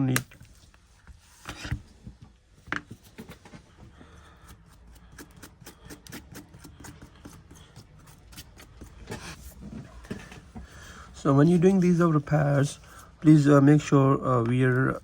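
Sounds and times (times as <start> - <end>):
pry tool clicking and scraping: 4.4 - 9.0.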